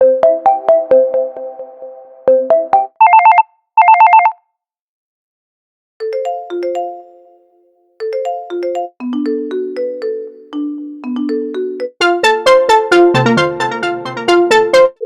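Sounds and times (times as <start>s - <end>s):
electronic telephone ring trill: 3.0s - 4.4s
melodic ringtone held notes: 6.0s - 15.0s
plucked note ringtone melody: 6.0s - 15.0s.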